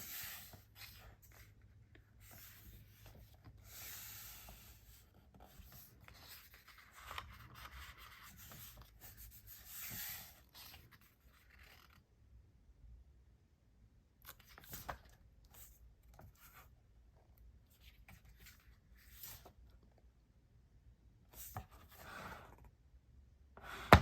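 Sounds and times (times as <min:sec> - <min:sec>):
album pages rustling: 0:00.0 - 0:12.0, 0:14.3 - 0:16.7.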